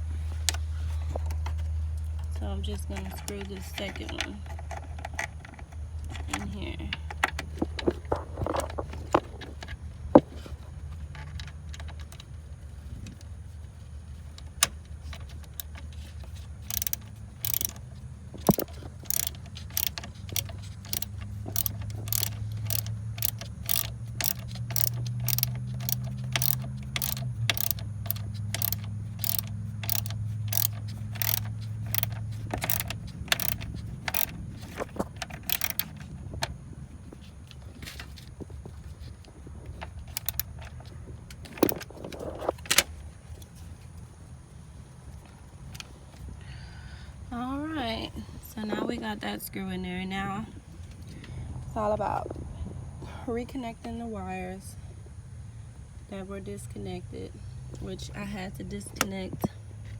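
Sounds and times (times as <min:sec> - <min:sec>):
steady low hum: 0:00.0 - 0:59.9
ratchet wrench clicking: 0:14.1 - 0:36.4, 0:39.8 - 0:42.9.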